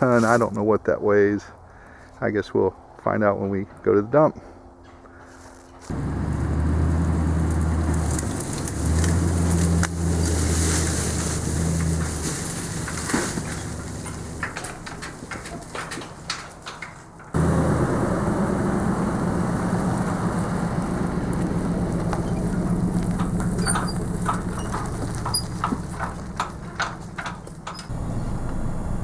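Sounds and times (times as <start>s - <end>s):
vehicle engine hum: 5.8s - 16.3s, 17.1s - 29.0s
sharp clicks and rattles: 11.8s - 17.6s, 21.3s - 29.0s.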